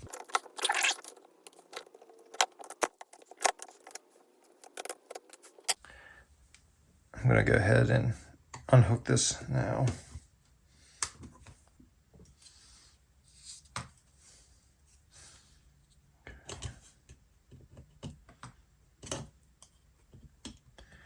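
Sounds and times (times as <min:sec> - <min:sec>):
light scraping and rubbing: 0:00.0 - 0:05.8.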